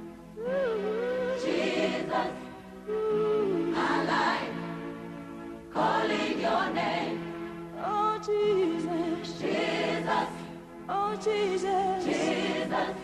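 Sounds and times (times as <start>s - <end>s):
person singing gospel: 7.8s - 13.0s.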